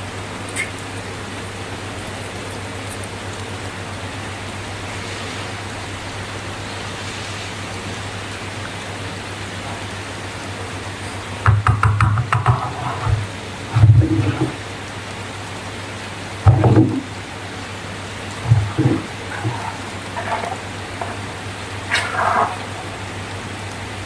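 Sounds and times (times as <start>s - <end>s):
rain-like hiss: 0.0s - 24.0s
handling noise clicks and rubbing: 18.4s - 23.1s.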